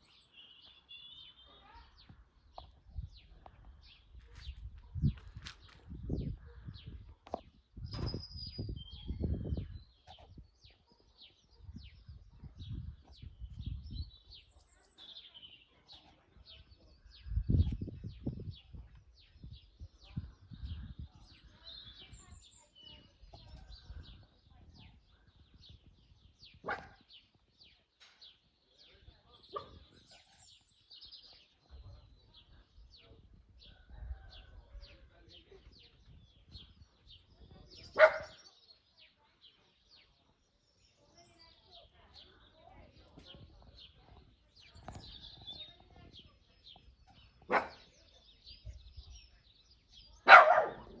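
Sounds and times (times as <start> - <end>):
small birds chirping: 0.0 - 51.0
dog barking: 26.6 - 27.1, 29.5 - 29.8, 38.0 - 38.4, 47.5 - 48.0, 50.2 - 51.0.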